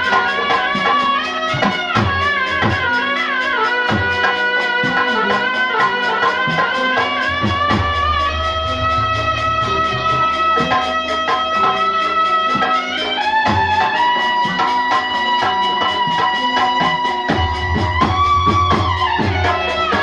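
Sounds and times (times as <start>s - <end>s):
quick steady percussion beat: 0.0s - 20.0s
sliding melody line: 0.0s - 20.0s.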